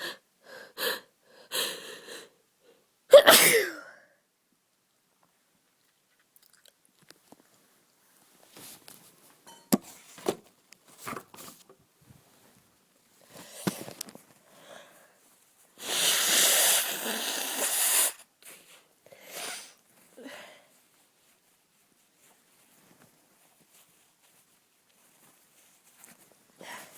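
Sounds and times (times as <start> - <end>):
wheezy breathing: 0.0 - 2.4, 15.8 - 20.6.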